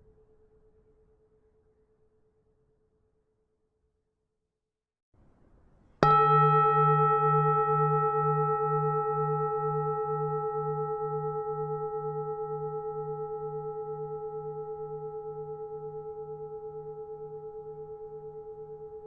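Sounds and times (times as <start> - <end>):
temple bell ringing: 6.0 - 19.0.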